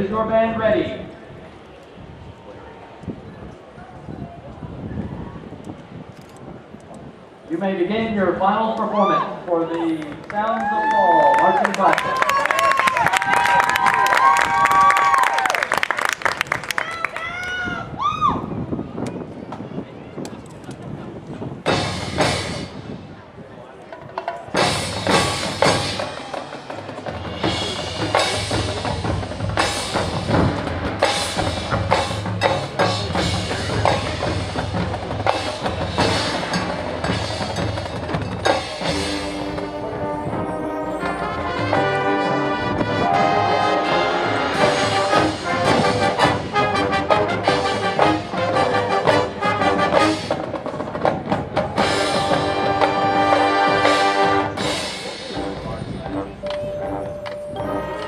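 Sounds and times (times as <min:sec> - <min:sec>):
drum and percussion hits: 0:21.6 - 0:23.0, 0:24.1 - 0:40.0, 0:47.7 - 0:58.0
marching band playing: 0:21.6 - 0:23.0, 0:24.0 - 0:58.0.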